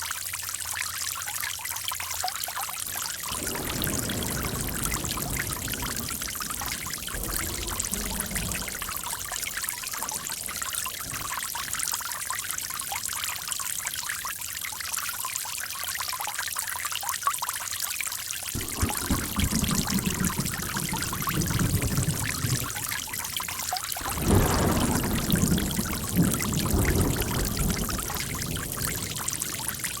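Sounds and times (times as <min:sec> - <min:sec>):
water trickling and splashing: 0:00.0 - 0:30.0
deep water rush: 0:02.8 - 0:15.0, 0:18.5 - 0:30.0.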